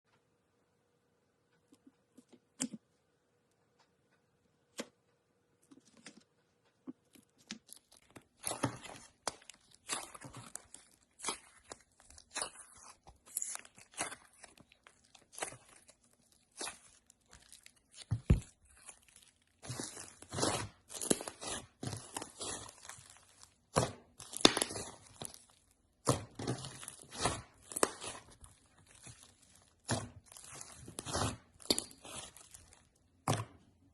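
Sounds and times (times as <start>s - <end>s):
slime crackling and crunching: 7.1s - 33.4s.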